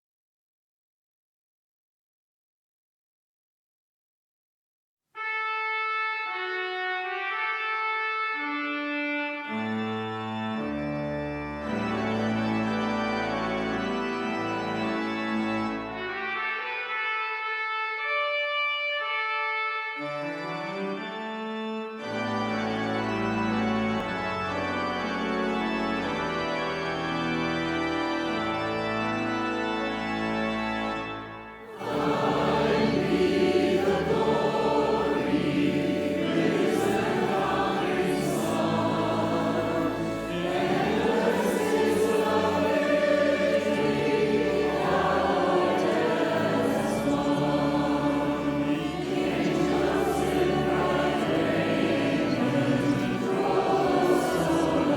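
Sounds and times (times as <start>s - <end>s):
church organ playing chords: 5.2s - 54.9s
choir singing a hymn: 9.4s - 16.4s, 31.6s - 54.9s.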